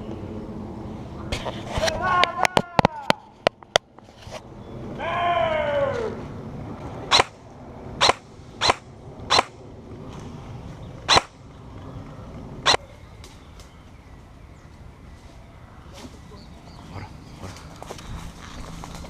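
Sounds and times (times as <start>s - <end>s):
low outdoor background: 0.0s - 19.0s.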